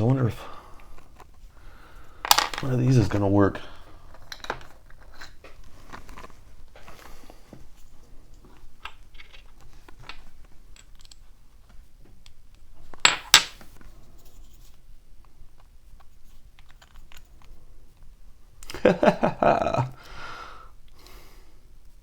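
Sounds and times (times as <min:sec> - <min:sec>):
metal tools clicking and clinking: 0:10.8 - 0:11.2.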